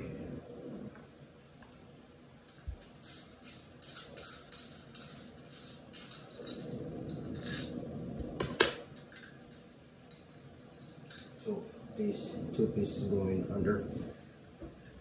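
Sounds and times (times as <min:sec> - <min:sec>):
small metal parts clinking: 0:02.5 - 0:07.7.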